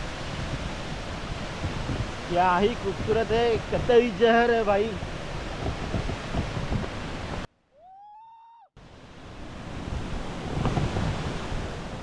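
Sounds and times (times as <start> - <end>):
waterfall rushing: 0.0 - 7.5
wind buffeting microphone: 0.0 - 7.5, 8.8 - 12.0
rising call: 7.7 - 8.7.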